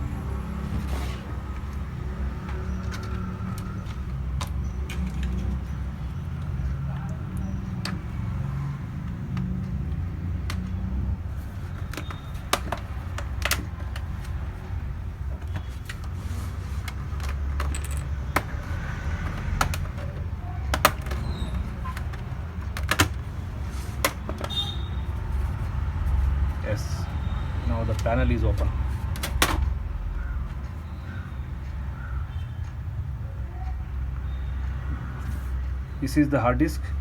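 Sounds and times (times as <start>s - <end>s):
sharp plastic clicks: 2.5s - 16.2s, 16.8s - 24.8s.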